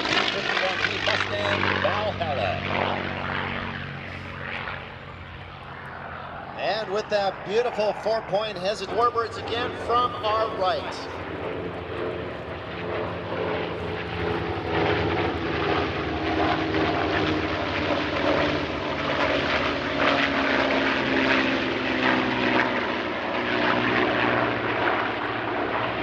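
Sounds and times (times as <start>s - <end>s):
propeller plane engine droning: 0.0s - 26.0s.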